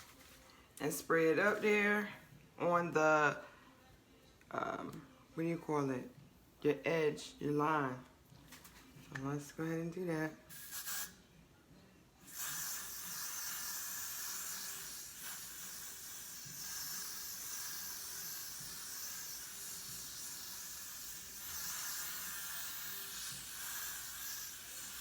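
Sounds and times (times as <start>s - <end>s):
aerosol spray hissing: 10.5s - 11.1s, 12.3s - 25.0s.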